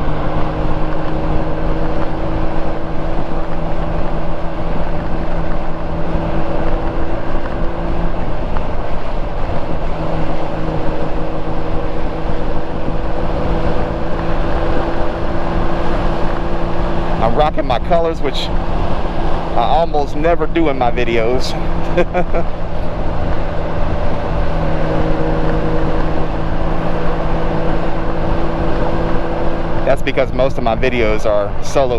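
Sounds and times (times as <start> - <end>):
motorcycle engine cruising: 0.0 - 31.9
wind and road noise: 0.0 - 31.9.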